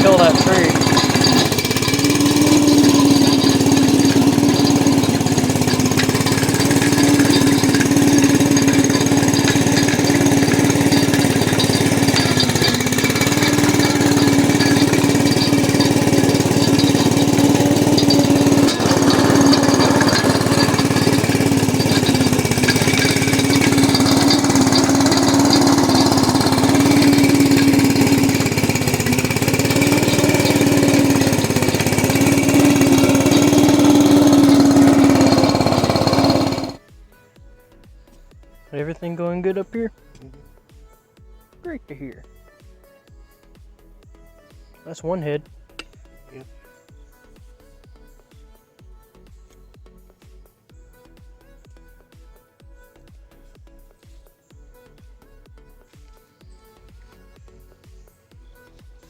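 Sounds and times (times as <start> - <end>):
small engine running under load: 0.0 - 36.9.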